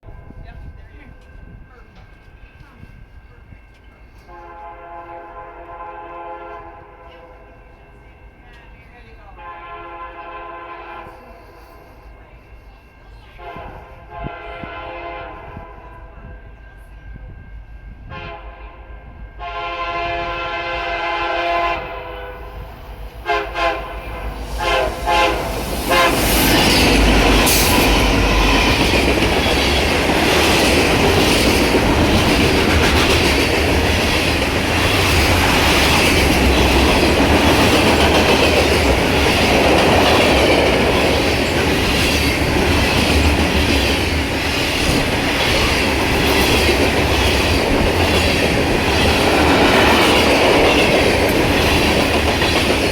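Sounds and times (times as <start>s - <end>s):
train rumble: 0.0s - 52.9s
locomotive air horn: 4.3s - 7.4s, 9.4s - 11.4s, 13.4s - 16.1s, 18.1s - 18.8s, 19.4s - 29.1s
train wheel clatter: 22.6s - 52.9s.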